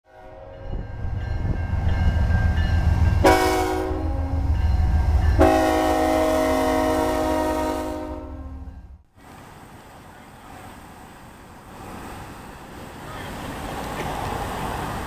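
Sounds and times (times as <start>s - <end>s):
train horn blasts: 0.1s - 1.3s, 3.1s - 9.0s
train rumble: 0.1s - 15.0s.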